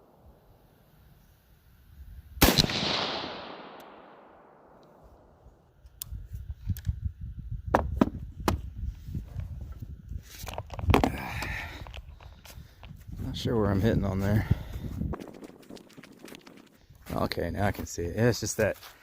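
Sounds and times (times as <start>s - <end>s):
rifle shot echoing: 2.4s - 5.3s.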